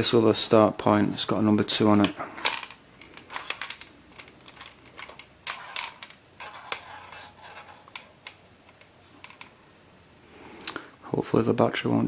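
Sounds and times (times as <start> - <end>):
ball bearing rolling on plastic tracks: 1.6 - 9.6.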